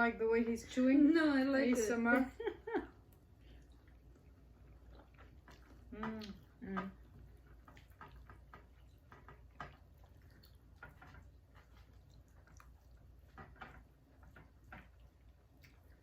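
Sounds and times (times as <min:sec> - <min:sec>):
chewing: 0:03.1 - 0:16.0.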